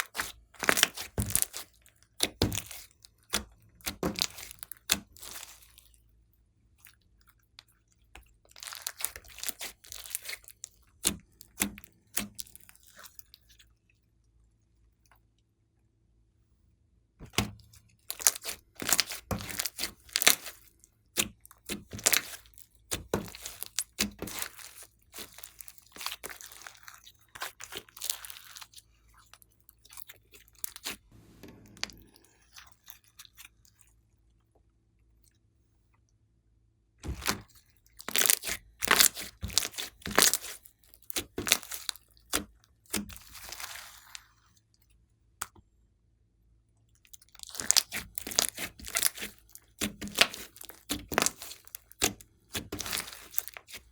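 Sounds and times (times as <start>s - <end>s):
slime crackling and popping: 0.0s - 5.8s, 8.5s - 12.8s, 17.3s - 28.7s, 37.0s - 44.0s, 47.2s - 53.9s
slime squeezed and stretched: 0.0s - 5.9s, 8.5s - 13.4s, 17.3s - 28.8s, 30.0s - 31.0s, 37.0s - 44.2s, 47.2s - 53.9s.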